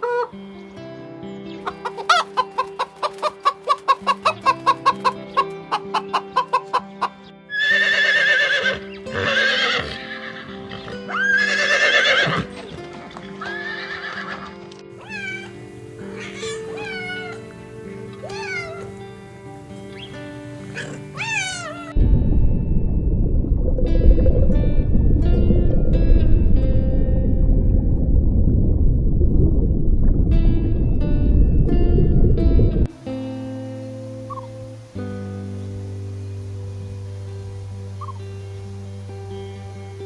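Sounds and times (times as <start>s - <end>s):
background music: 0.0s - 29.1s, 30.2s - 40.0s
chickens clucking: 1.6s - 7.3s, 15.0s - 22.0s
loud harsh animal calls: 3.3s - 12.4s, 13.5s - 22.0s
short high falling calls: 15.0s - 22.0s.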